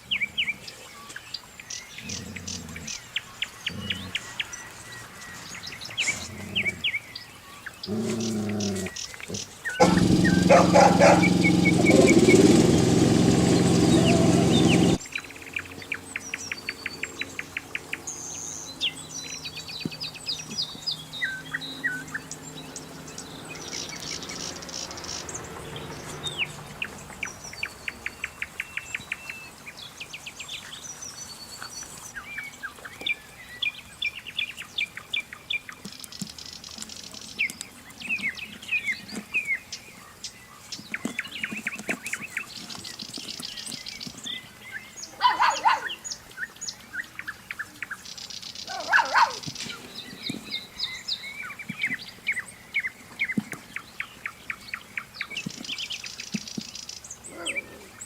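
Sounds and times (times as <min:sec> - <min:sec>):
small birds chirping: 0:00.0 - 0:58.0
lower bird calls: 0:01.8 - 0:29.5.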